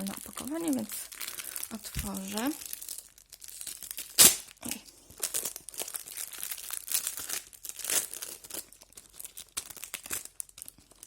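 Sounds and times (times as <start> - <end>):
packaging crinkling: 0.0 - 11.0.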